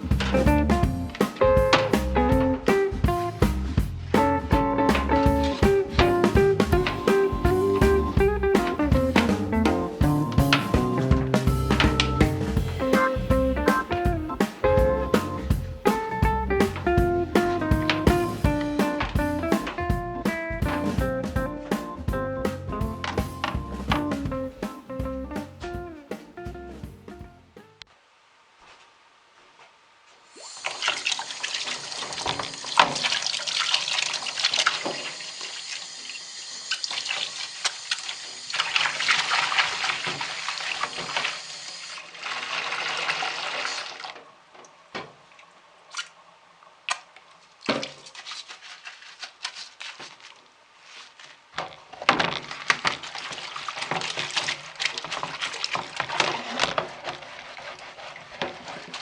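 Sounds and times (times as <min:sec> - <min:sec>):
knocks and clatters of handling: 0:13.6 - 0:19.9
tap water running into sink: 0:30.6 - 0:44.1.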